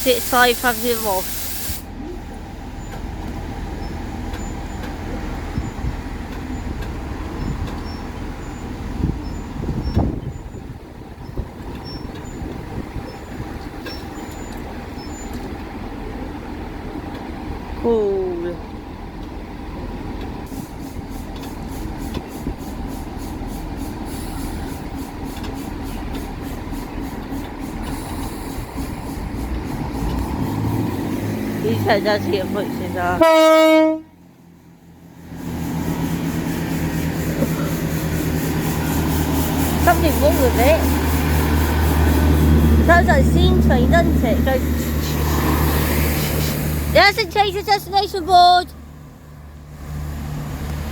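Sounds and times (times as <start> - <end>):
person talking: 0.0 - 1.3, 31.6 - 33.2, 39.8 - 40.9, 42.8 - 44.7, 46.9 - 48.7
diesel train engine rumbling: 0.0 - 50.9.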